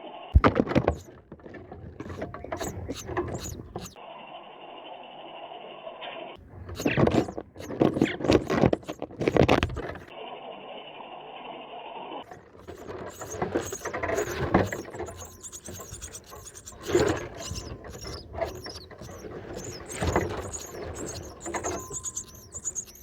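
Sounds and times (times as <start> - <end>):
starlings chirping: 0.8 - 1.1, 2.1 - 4.0, 6.5 - 10.1, 12.3 - 23.0
rustles: 6.4 - 10.1, 12.2 - 23.0.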